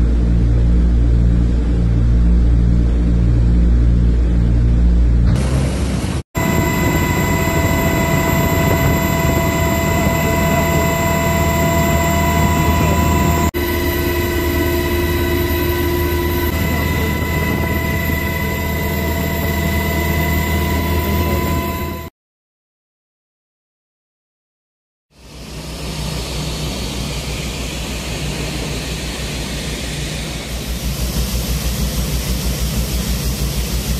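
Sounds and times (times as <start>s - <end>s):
aircraft engines running: 0.0s - 22.1s, 25.2s - 33.9s.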